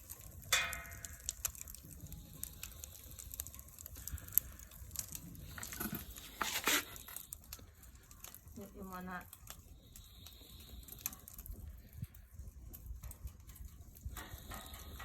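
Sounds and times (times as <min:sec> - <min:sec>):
wood fire crackling and popping: 0:00.0 - 0:15.0
rustle: 0:05.0 - 0:07.4.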